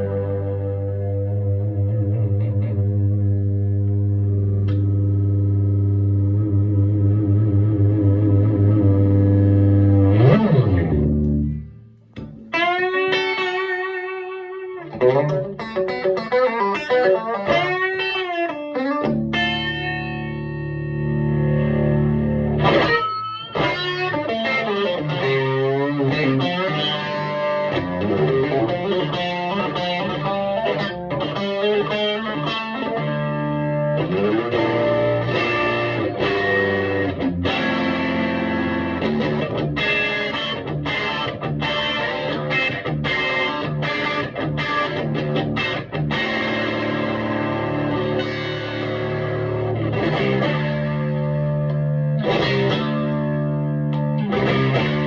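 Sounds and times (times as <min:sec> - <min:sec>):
electric guitar through amplifier: 0:00.0 - 0:55.0.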